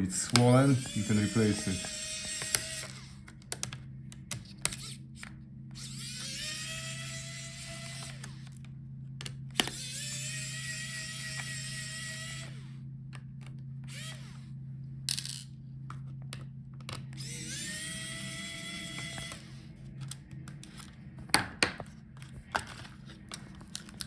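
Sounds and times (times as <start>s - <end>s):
electric screwdriver whirring: 0.2s - 3.7s, 4.4s - 8.6s, 9.5s - 12.8s, 13.8s - 14.5s, 16.9s - 24.0s.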